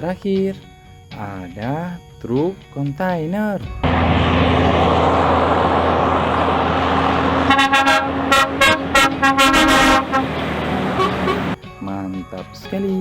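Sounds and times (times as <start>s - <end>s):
truck engine rumble: 2.2s - 12.2s
short horn toots: 7.4s - 11.6s.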